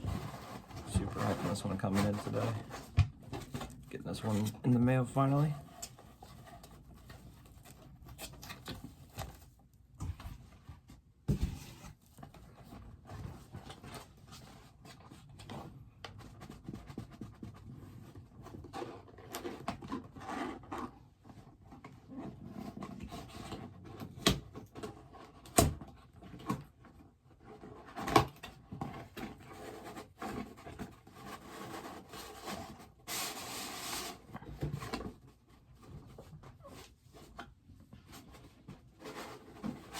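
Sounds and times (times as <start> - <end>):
cardboard packaging rustling: 0.0 - 9.6.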